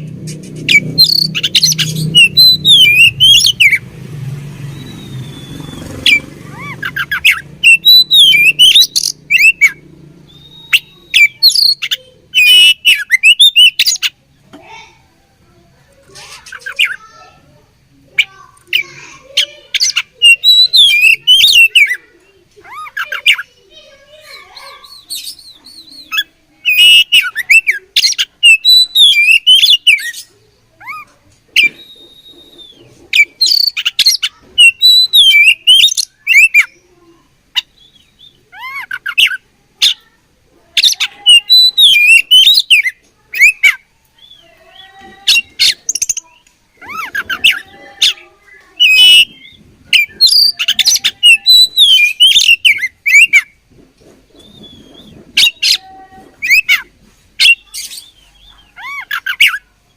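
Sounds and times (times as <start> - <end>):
bird singing chirps and whistles: 0.7 - 3.8, 4.6 - 14.1, 18.7 - 22.0, 24.6 - 30.3, 31.6 - 36.8, 40.8 - 44.5, 45.3 - 53.5, 54.4 - 55.8, 57.4 - 59.6.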